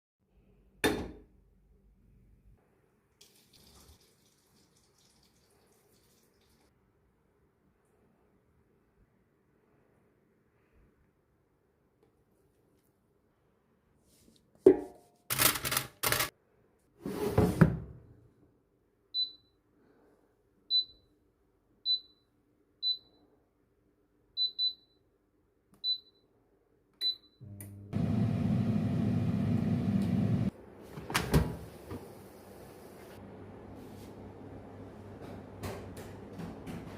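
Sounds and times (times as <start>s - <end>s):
air fryer fan running: 27.5s - 30.5s.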